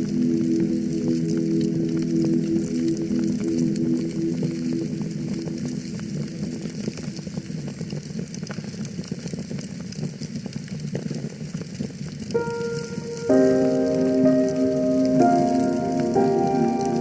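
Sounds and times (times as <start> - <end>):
held music notes: 0.0 - 8.0, 12.4 - 17.0
wood fire crackling: 0.0 - 17.0.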